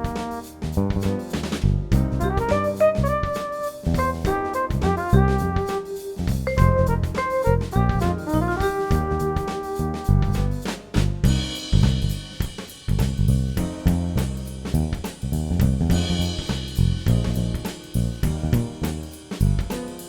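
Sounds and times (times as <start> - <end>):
bass line: 0.0 - 19.7
drum kit groove: 0.0 - 20.0.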